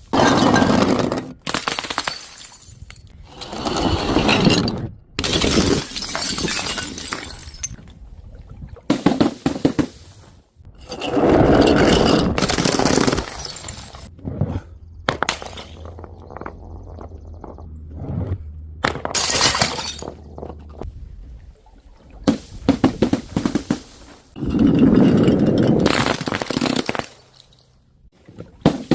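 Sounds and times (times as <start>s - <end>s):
glass bottles shattering: 1.6s - 3.1s, 4.2s - 7.8s, 10.8s - 14.1s, 19.0s - 20.4s, 24.4s - 27.8s
glass shards clinking: 4.2s - 7.8s, 10.8s - 14.1s, 19.2s - 20.2s.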